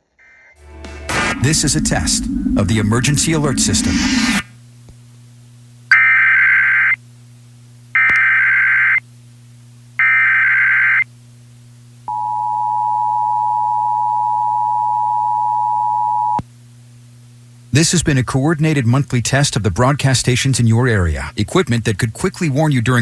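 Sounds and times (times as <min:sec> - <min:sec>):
digital header bursts: 0:00.8 - 0:04.4
two-tone attention signal: 0:12.1 - 0:16.4.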